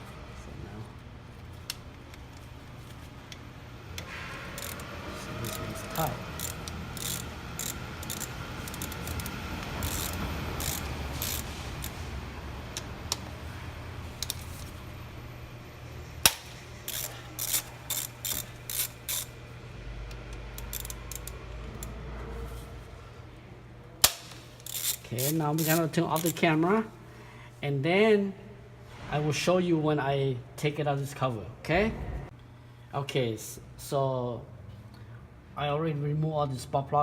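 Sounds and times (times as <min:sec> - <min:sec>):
socket ratchet clicking: 0:04.0 - 0:12.0, 0:16.2 - 0:19.3, 0:20.1 - 0:21.9, 0:24.0 - 0:26.4.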